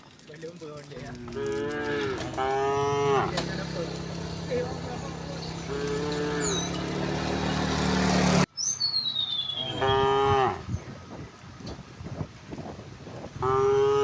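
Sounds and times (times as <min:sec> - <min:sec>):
cows mooing: 0:01.0 - 0:08.4.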